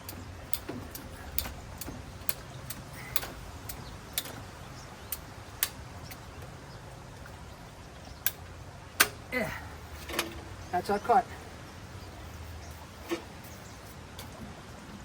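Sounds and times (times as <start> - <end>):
pipe cutter clicking: 0.0 - 4.4.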